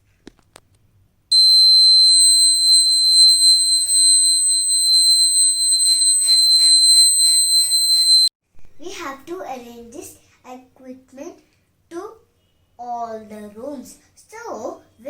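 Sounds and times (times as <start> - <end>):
buzzer high-pitched tone: 1.3 - 8.3.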